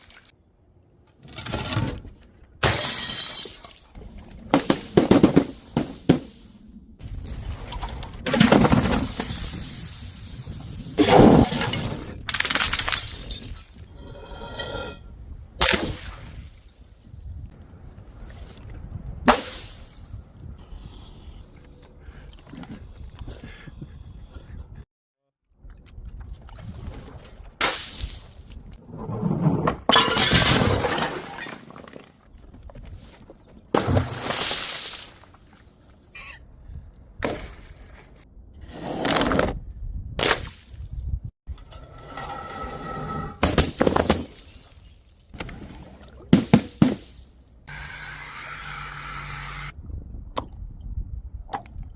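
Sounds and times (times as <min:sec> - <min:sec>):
glass bottles shattering: 0:00.0 - 0:00.3, 0:02.6 - 0:04.0, 0:12.4 - 0:13.9, 0:29.9 - 0:31.9.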